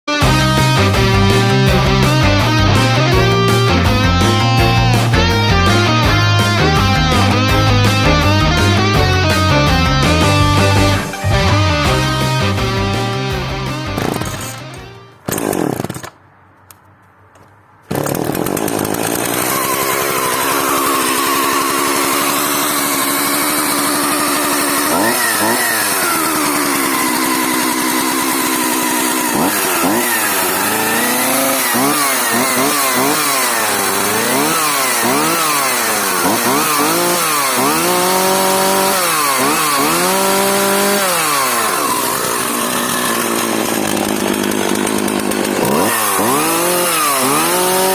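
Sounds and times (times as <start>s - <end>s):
music: 0.1s - 15.2s
chainsaw engine revving: 0.1s - 16.2s, 17.8s - 47.9s.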